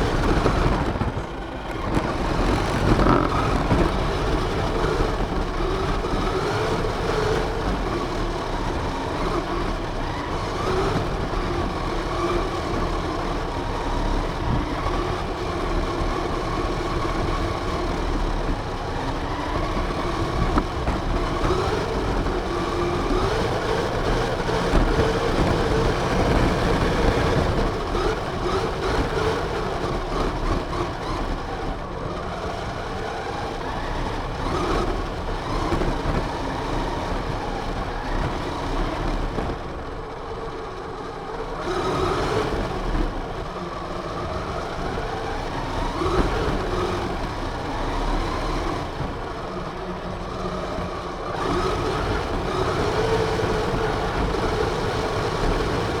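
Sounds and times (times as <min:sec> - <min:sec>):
rough rattling noise: 0:00.0 - 0:04.7
rc car drivetrain whining: 0:00.0 - 0:56.0.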